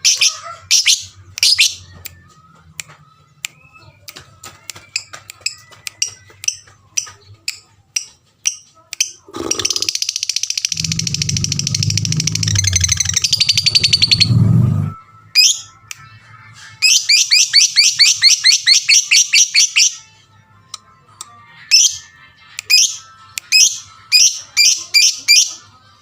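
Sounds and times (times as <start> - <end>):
lovebird chirping and chattering: 0.0 - 1.8, 4.9 - 14.4, 16.8 - 20.0
low drone: 10.7 - 15.0.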